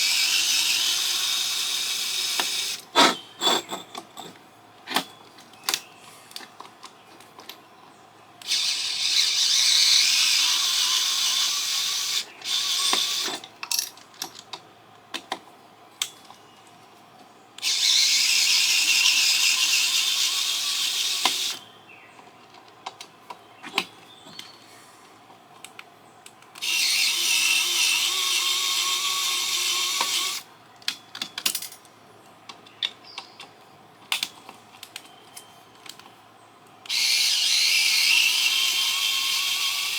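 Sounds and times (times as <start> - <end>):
cordless drill running: 0.0 - 3.2, 8.4 - 13.3, 17.6 - 21.6, 26.6 - 30.4, 36.9 - 39.9
clicks and knocks of parts handled: 2.4 - 7.6, 12.4 - 16.7, 30.0 - 36.2.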